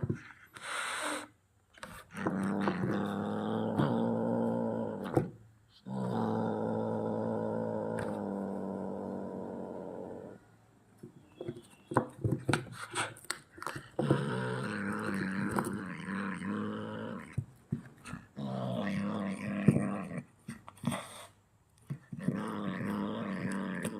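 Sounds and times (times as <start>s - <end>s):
kitten growling: 1.9s - 10.4s, 13.9s - 21.1s, 22.0s - 23.9s.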